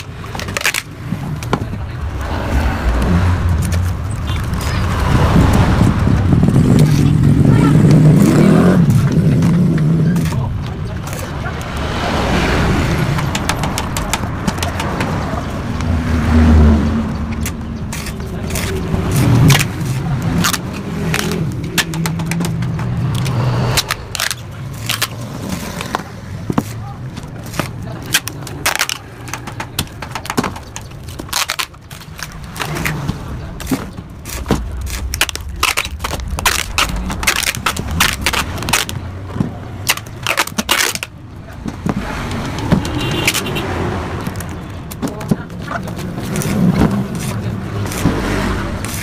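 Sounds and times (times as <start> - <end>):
two-stroke motorcycle engine crackling: 3.5 - 11.8, 17.1 - 49.0.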